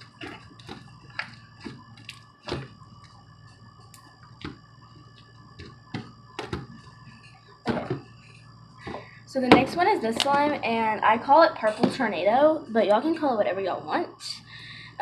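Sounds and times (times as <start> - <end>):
plastic tubs and lids knocking: 5.6 - 6.8, 7.7 - 8.0.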